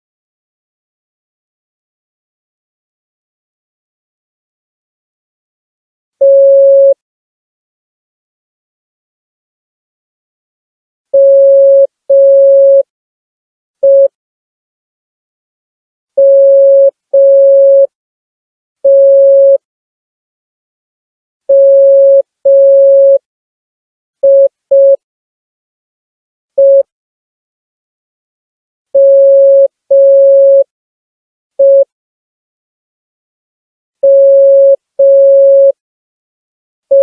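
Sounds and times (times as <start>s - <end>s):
morse code beeps: 6.2s - 7.0s, 11.2s - 12.8s, 13.8s - 14.1s, 16.2s - 17.9s, 18.9s - 19.6s, 21.5s - 23.2s, 24.2s - 25.0s, 26.6s - 26.8s, 29.0s - 30.6s, 31.6s - 31.8s, 34.0s - 35.7s.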